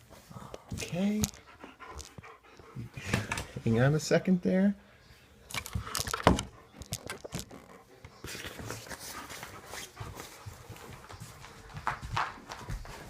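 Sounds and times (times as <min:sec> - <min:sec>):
dog shuffling: 0:06.7 - 0:13.0.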